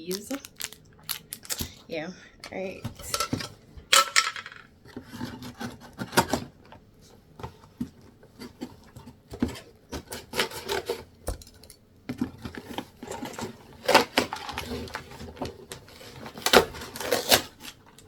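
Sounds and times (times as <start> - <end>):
packaging rubbing and scraping: 0.1 - 1.7, 12.4 - 18.0.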